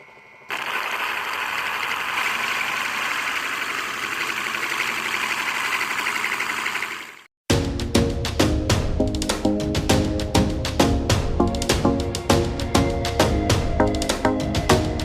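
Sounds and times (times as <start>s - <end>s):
motor sanding machine grinding: 0.5s - 7.3s.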